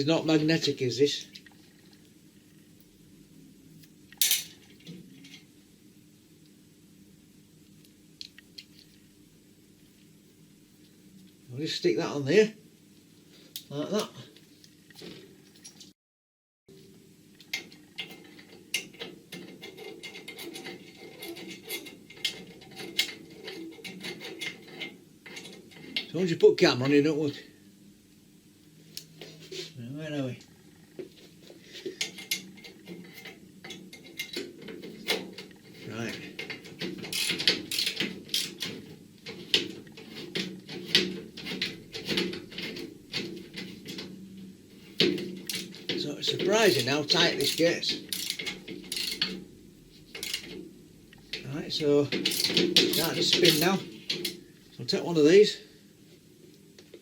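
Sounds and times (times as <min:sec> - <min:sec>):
ratchet tool clicking: 0:37.1 - 0:38.6, 0:47.4 - 0:49.3, 0:52.2 - 0:53.7.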